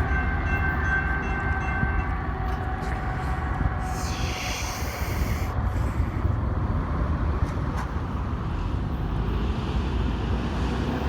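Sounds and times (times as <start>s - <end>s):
train cars rolling on rails: 0.0s - 11.0s.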